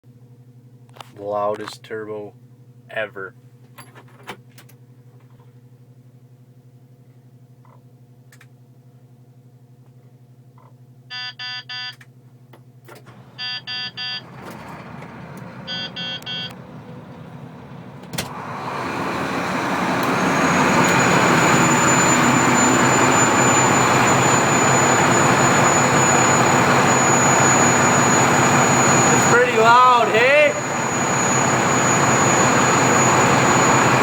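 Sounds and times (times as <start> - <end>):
short electronic beeps: 11.1 - 12.0, 13.4 - 14.2, 15.7 - 16.6
diesel truck engine: 13.0 - 34.0
turbo whistle: 15.7 - 16.5, 19.7 - 34.0.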